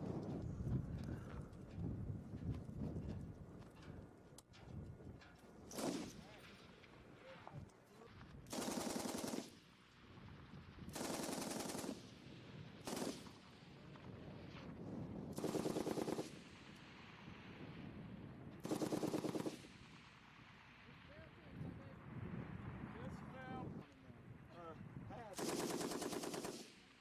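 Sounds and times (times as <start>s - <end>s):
machine gun firing bursts: 5.7s - 6.2s, 8.4s - 9.7s, 10.9s - 12.2s, 12.8s - 13.4s, 15.4s - 16.5s, 18.6s - 19.8s, 25.3s - 27.0s.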